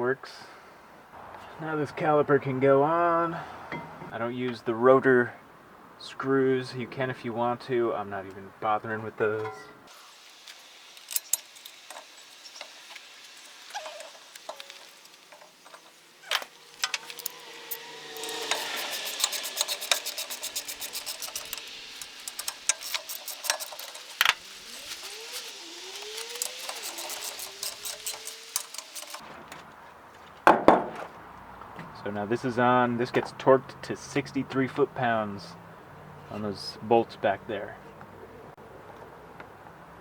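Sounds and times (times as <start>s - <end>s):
ratchet wrench clicking: 16.6s - 29.2s.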